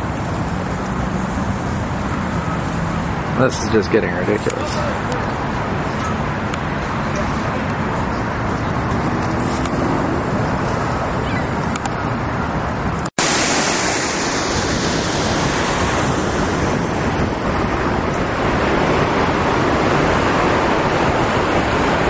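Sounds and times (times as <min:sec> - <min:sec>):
floodwater rushing: 0:13.2 - 0:22.0.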